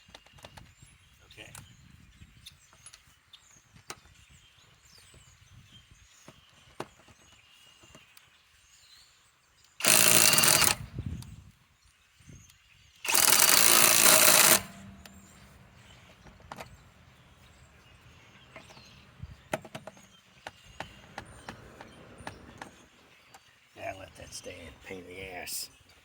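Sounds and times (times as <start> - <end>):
impact wrench hammering: 9.8 - 10.8, 13.1 - 15.6.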